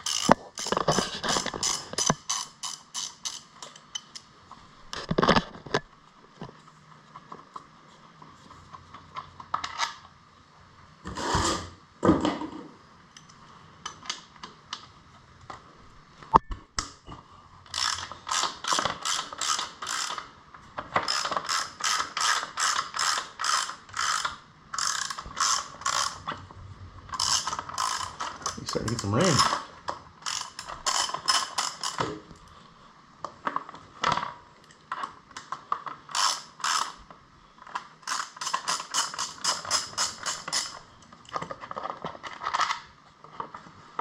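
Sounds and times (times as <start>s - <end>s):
socket ratchet clicking: 0.0s - 4.2s, 17.7s - 20.2s, 21.0s - 26.2s, 27.2s - 29.1s, 30.2s - 32.0s, 36.1s - 37.0s, 38.0s - 40.8s.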